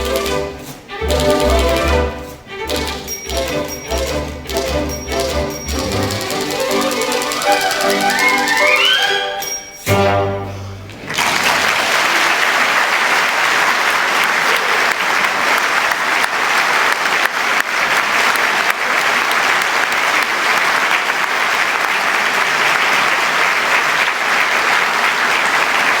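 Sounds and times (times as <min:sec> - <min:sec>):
audience applauding: 0:00.0 - 0:09.4, 0:10.8 - 0:26.0.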